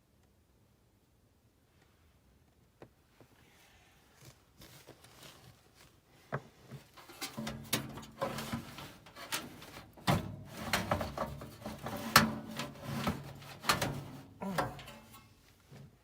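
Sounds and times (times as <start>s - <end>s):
metal scraping on sheet metal: 7.0s - 15.3s
metal parts clunking: 7.0s - 15.4s.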